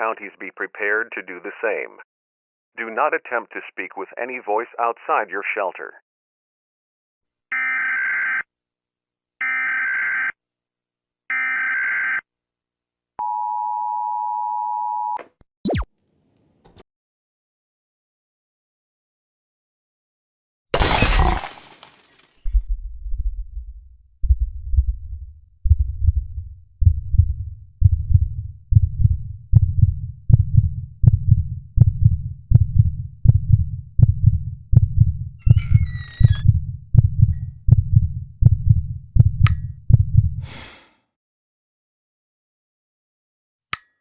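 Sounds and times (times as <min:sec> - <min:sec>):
deep muffled thumps: 0:22.6 - 0:40.4.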